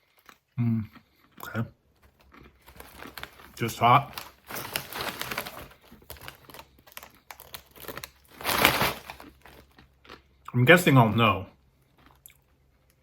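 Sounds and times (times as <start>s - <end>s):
chip bag crinkling: 2.0s - 10.2s.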